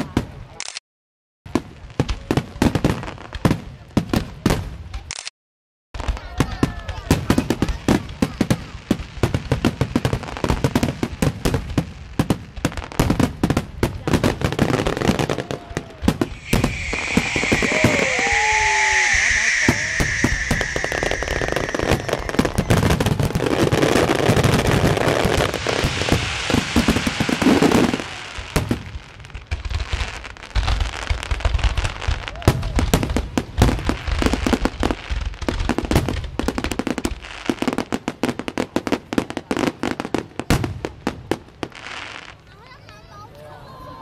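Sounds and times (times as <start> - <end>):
fireworks crackling bangs: 6.0 - 43.0
firework whistle: 16.0 - 28.6.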